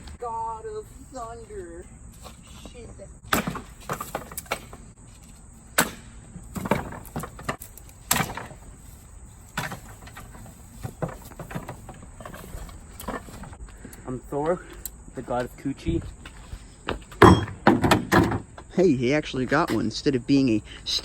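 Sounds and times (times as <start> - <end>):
sledgehammer striking wood: 3.3 - 4.7, 5.8 - 8.6, 17.2 - 18.4.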